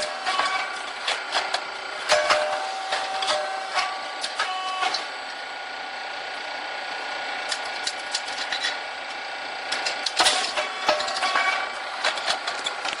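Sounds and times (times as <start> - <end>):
machine whine: 0.0 - 13.0
sharp clicks and clatter: 7.5 - 8.8, 9.7 - 13.0.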